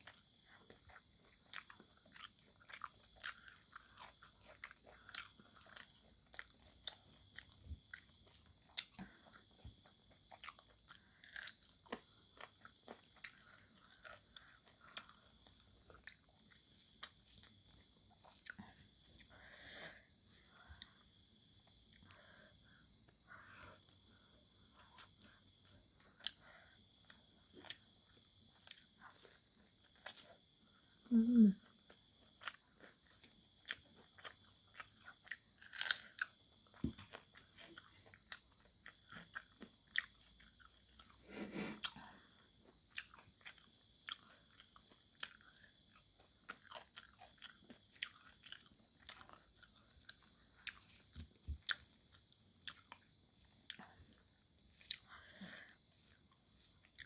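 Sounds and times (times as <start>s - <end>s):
chewing and crunching: 0.0s - 57.0s.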